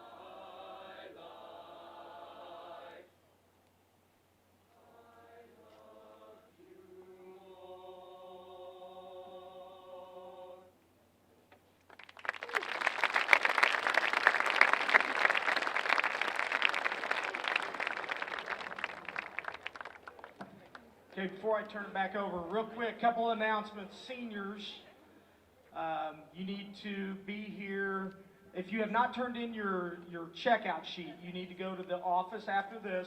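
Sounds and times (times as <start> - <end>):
choir singing: 0.0 - 3.1, 4.7 - 10.7
crowd applauding: 11.9 - 20.9.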